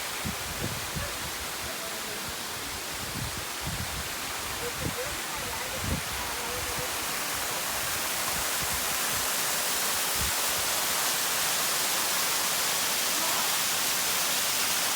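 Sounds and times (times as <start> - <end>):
waterfall rushing: 0.0 - 14.9.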